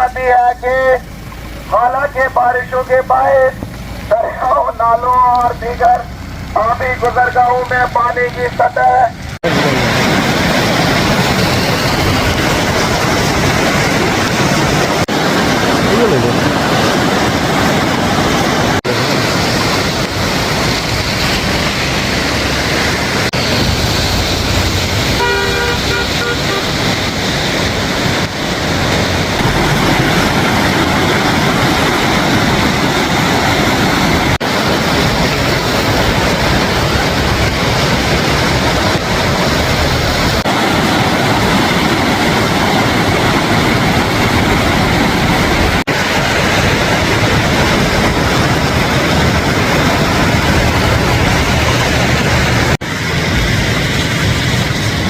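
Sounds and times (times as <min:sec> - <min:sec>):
floodwater rushing: 0:00.0 - 0:55.0
short horn-like tone: 0:25.2 - 0:26.7.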